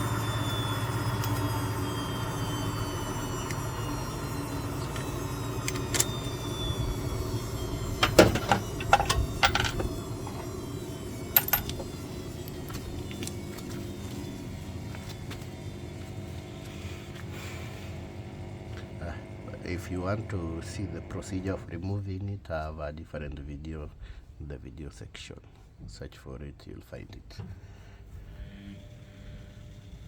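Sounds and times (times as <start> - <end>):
low mechanical hum with whine: 0.0 - 30.0
hand tools clinking: 8.0 - 10.4, 11.3 - 13.4.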